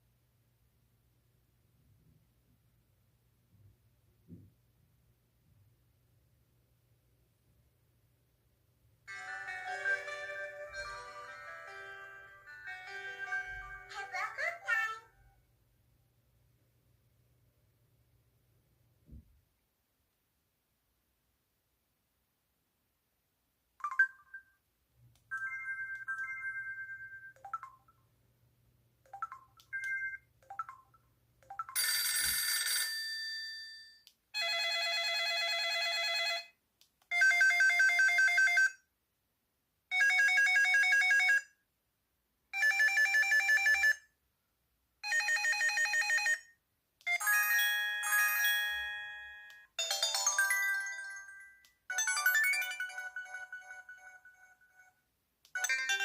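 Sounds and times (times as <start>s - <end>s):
phone ringing: 31.5s - 38.8s, 39.9s - 41.5s, 42.6s - 44.0s, 45.0s - 46.5s, 47.1s - 55.0s, 55.6s - 56.0s.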